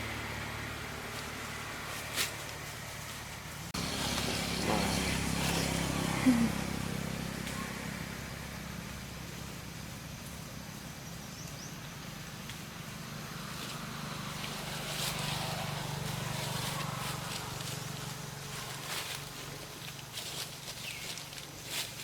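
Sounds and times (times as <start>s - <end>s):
vehicle engine humming: 0.0s - 22.0s.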